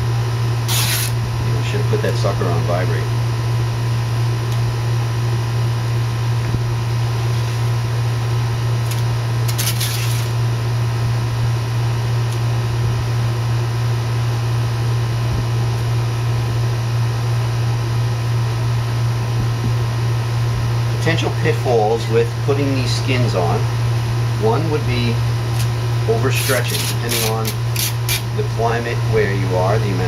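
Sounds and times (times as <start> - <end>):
low mechanical hum: 0.0 - 30.0
brief scratchy hiss: 0.7 - 1.1.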